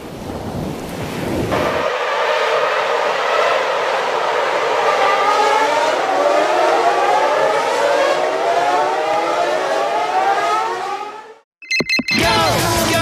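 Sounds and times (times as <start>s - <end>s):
racing car engines at high revs: 1.5s - 11.4s.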